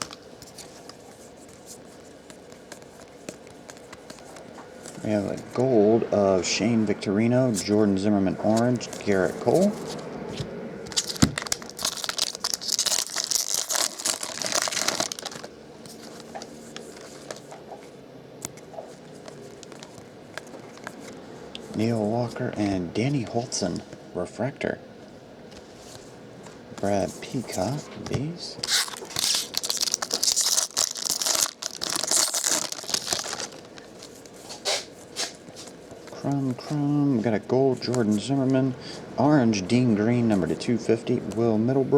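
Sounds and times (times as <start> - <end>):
wrapper tearing and crinkling: 10.9 - 17.5, 28.6 - 34.4.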